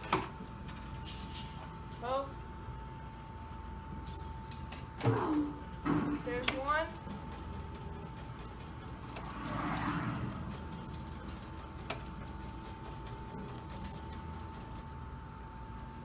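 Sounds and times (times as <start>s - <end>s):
arcade machines humming: 0.0s - 16.0s.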